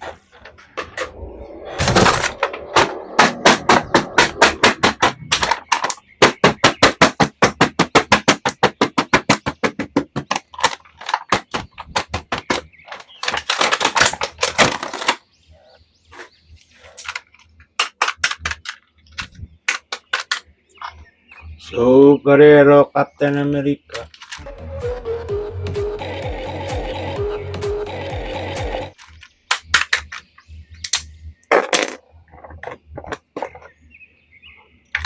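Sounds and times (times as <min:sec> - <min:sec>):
plastic scraping and rustling: 0:00.0 - 0:21.0, 0:23.9 - 0:24.5, 0:31.5 - 0:33.9.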